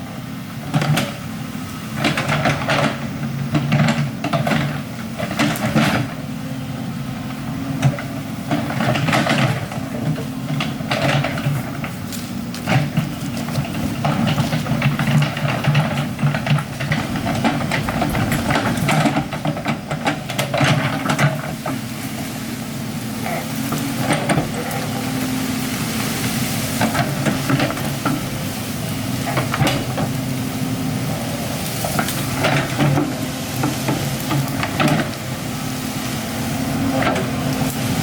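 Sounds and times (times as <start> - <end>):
excavator diesel engine: 0.0 - 38.0
crackling and clattering ground: 2.0 - 6.2, 7.2 - 30.3, 31.0 - 38.0.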